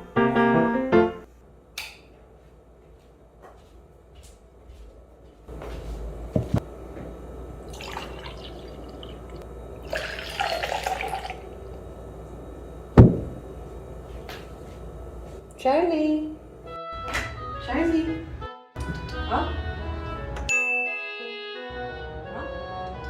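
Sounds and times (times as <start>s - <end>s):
water running into sink: 7.7s - 11.7s.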